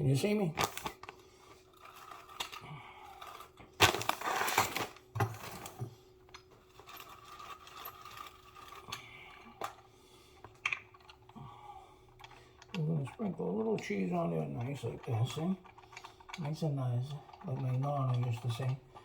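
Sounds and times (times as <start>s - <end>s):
plastic bag crinkling: 3.2s - 5.8s.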